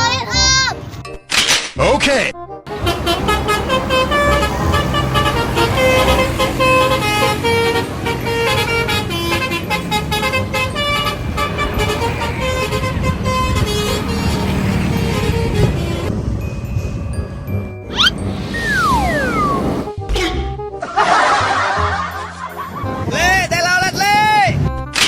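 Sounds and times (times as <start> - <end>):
engine rumble: 2.7 - 20.0
musical vehicle horn melody: 2.7 - 20.0.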